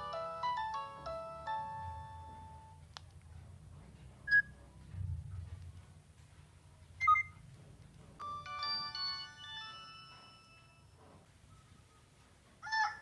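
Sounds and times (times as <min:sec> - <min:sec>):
polyphonic ringtone tune: 0:00.0 - 0:02.8, 0:08.2 - 0:11.0.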